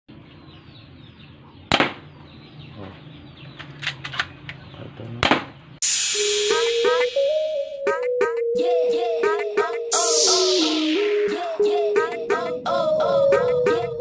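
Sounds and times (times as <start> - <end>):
airsoft pistol shots: 1.7 - 2.0.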